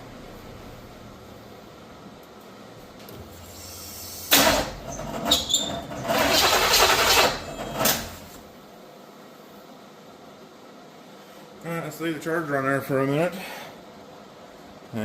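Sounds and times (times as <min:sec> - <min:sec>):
car engine cranking on starter: 0:06.0 - 0:08.2.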